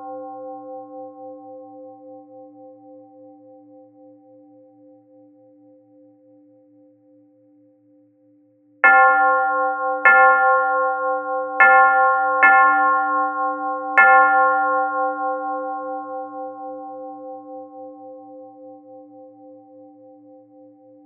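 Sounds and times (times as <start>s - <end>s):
church bell ringing: 0.0s - 1.8s, 8.8s - 18.0s.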